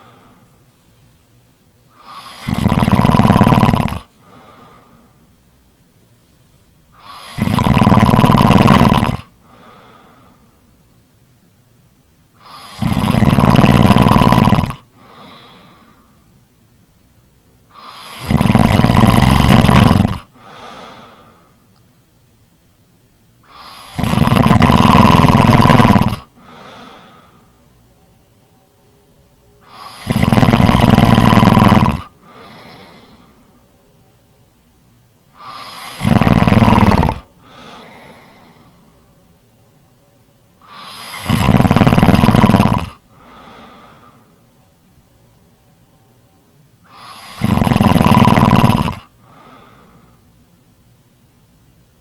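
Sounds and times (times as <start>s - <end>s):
loud rhythmic snoring: 0.0s - 0.4s, 1.9s - 5.2s, 6.9s - 10.6s, 12.4s - 16.2s, 17.7s - 21.6s, 23.4s - 27.6s, 29.6s - 33.5s, 35.3s - 39.0s, 40.6s - 44.4s, 46.8s - 50.1s
faint breath: 0.0s - 1.2s, 4.1s - 5.3s, 9.4s - 10.8s, 14.9s - 16.4s, 20.3s - 21.7s, 26.3s - 27.7s, 32.2s - 33.7s, 37.3s - 39.2s, 43.0s - 44.6s, 49.1s - 50.4s.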